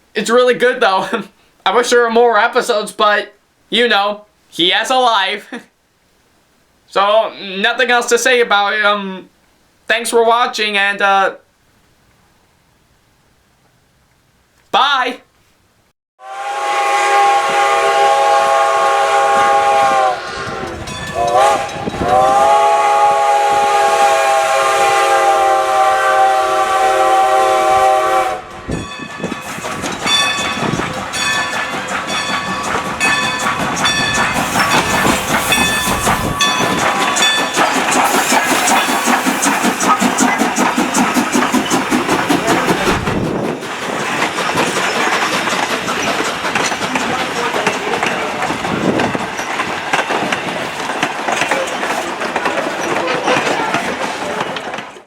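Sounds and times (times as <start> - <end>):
steam locomotive whistle: 16.2 - 41.7
train wheels clickety-clack: 19.1 - 23.8, 28.5 - 55.0.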